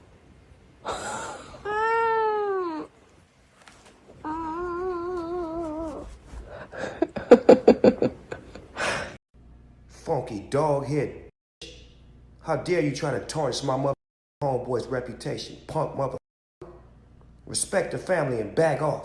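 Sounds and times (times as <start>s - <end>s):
cat meowing in long yowls: 1.6s - 2.9s.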